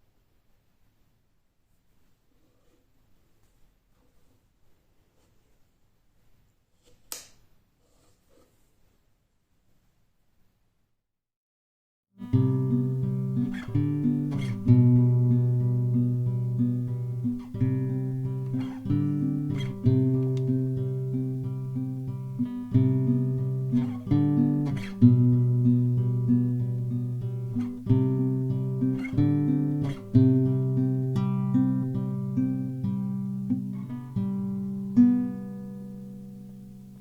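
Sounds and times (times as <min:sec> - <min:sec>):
acoustic guitar music: 0:12.2 - 0:37.0.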